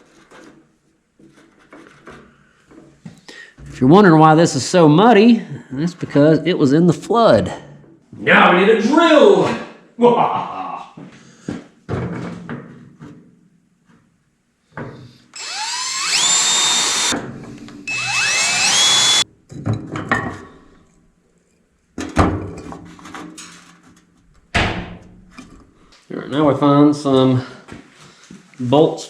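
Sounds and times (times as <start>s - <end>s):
power drill spinning up: 15.3s - 19.2s
handling knocks and clatter: 19.5s - 20.5s.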